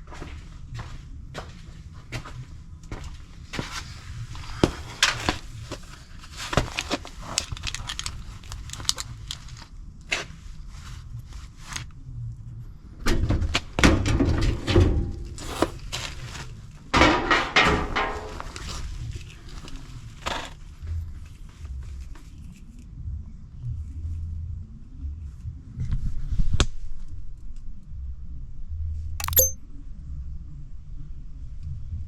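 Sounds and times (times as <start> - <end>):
metal rattling and scraping: 16.9 - 18.9.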